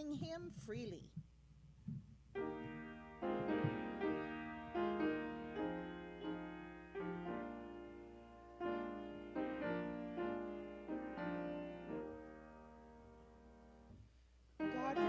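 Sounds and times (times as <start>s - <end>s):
piano chords ringing: 2.3s - 14.0s, 14.6s - 15.0s.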